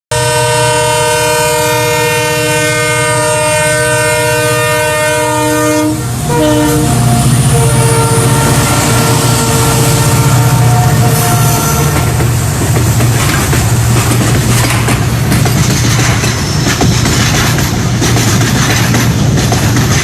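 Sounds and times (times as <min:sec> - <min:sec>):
train horn: 0:00.1 - 0:12.5
low hum of train running: 0:00.1 - 0:20.0.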